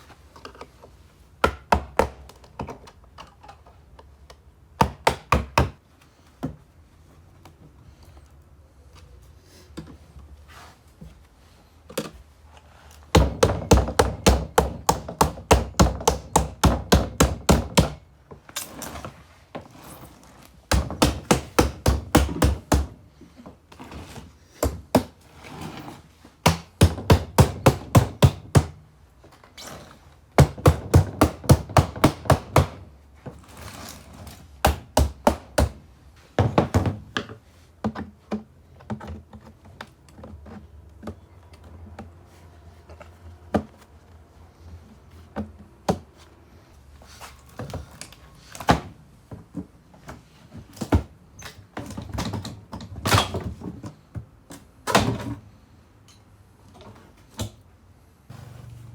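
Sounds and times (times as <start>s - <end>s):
sharp hard knocks: 26.4s - 28.8s.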